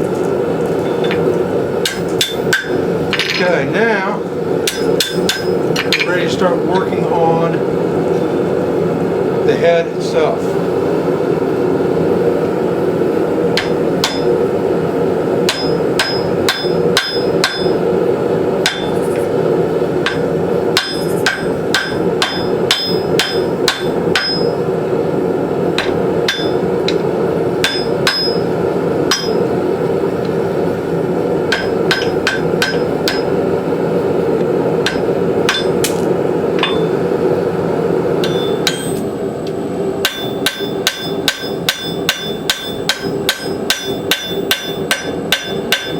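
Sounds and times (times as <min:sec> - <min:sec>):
hammer striking hot steel on anvil: 0:00.8 - 0:03.5, 0:04.6 - 0:06.9, 0:13.5 - 0:14.4, 0:15.4 - 0:17.9, 0:18.6 - 0:19.0, 0:20.0 - 0:24.6, 0:25.7 - 0:29.5, 0:31.5 - 0:33.4, 0:34.8 - 0:37.0, 0:38.2 - 0:39.1, 0:40.0 - 0:45.9.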